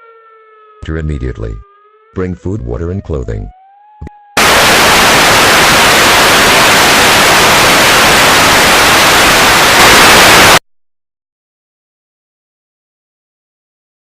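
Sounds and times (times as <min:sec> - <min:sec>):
loud static hiss: 0:04.4 - 0:10.6.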